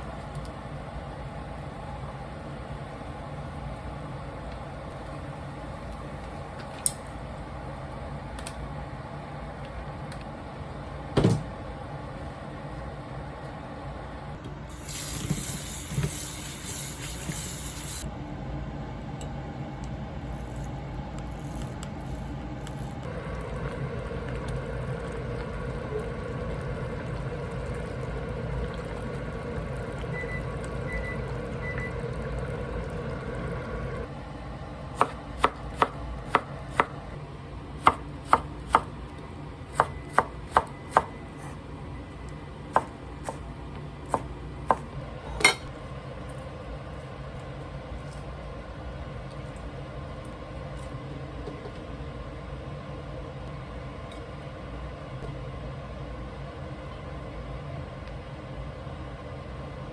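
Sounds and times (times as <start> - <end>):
steady kitchen hum: 0.0 - 59.9
tap water running: 14.7 - 18.1.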